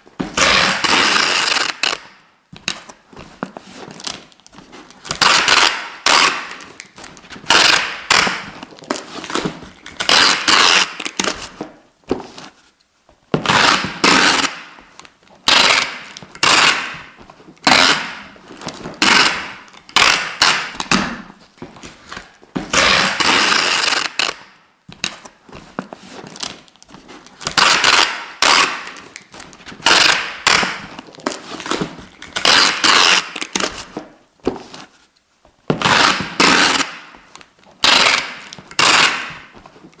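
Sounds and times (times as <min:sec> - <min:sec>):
adhesive tape ripping: 0:00.4 - 0:02.9, 0:05.0 - 0:11.5, 0:13.4 - 0:14.8, 0:15.5 - 0:18.3, 0:18.9 - 0:21.3, 0:22.1 - 0:25.3, 0:27.4 - 0:33.9, 0:35.8 - 0:37.1, 0:37.8 - 0:39.5.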